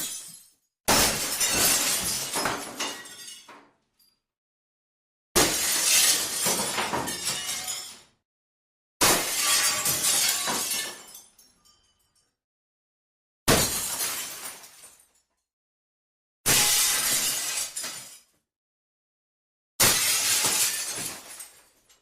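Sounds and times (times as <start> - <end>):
glass smashing: 0.0 - 3.6, 5.4 - 8.0, 9.0 - 12.2, 13.5 - 15.1, 16.5 - 18.3, 19.8 - 21.8.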